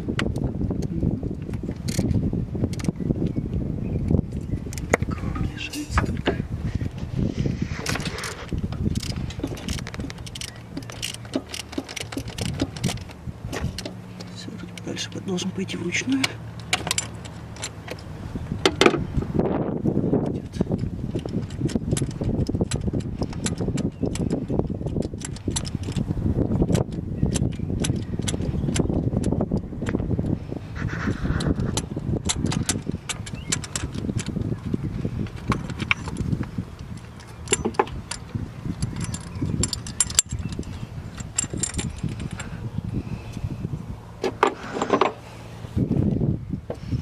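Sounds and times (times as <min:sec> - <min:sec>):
low rumble: 0:00.0 - 0:11.3, 0:16.4 - 0:44.2
metallic tool clicks and clinks: 0:37.0 - 0:42.5.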